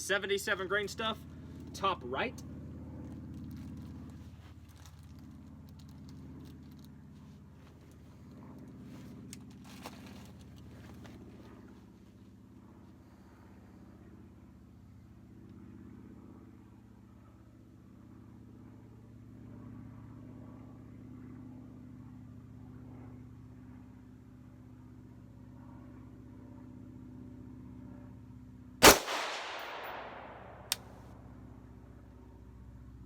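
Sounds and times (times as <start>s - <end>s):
steady low hum: 0.0s - 33.0s
faint gunshot crack: 28.8s - 30.8s
rifle shot: 28.8s - 30.9s.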